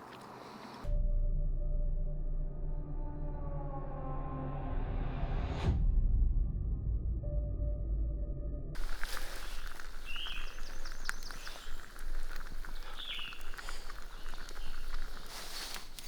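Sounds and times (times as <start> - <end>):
bird chirping: 8.8 - 16.0
small clicks and crackles: 8.8 - 16.0.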